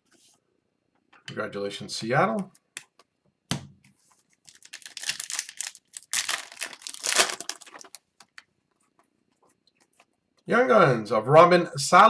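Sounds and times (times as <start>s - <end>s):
foil wrapper crinkling: 4.5s - 8.4s.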